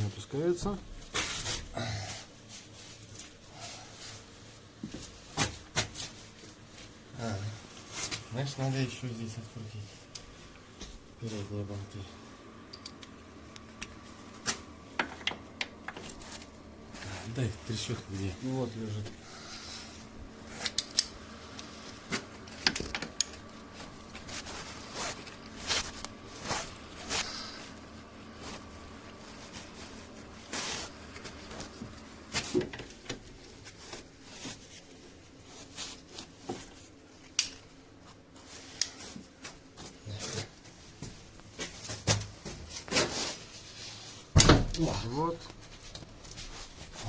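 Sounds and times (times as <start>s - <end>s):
hand tools clinking and knocking: 20.6s - 21.2s.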